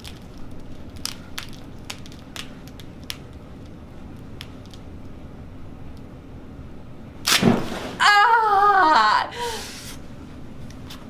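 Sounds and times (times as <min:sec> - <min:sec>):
small clicks and crackles: 0:00.0 - 0:05.2
low steady hum: 0:00.0 - 0:11.0.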